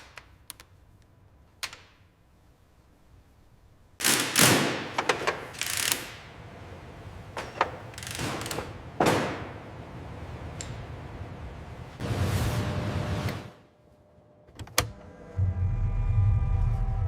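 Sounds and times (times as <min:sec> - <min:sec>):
mechanical clunks and thuds: 0:04.1 - 0:12.0.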